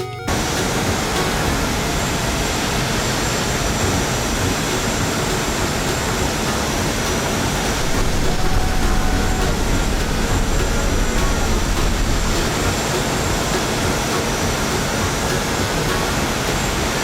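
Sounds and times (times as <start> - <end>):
loud rushing noise: 0.3 - 17.0.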